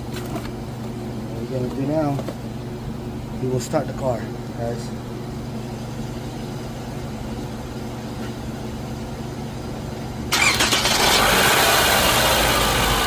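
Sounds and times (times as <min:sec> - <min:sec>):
steady low hum: 0:00.0 - 0:10.4.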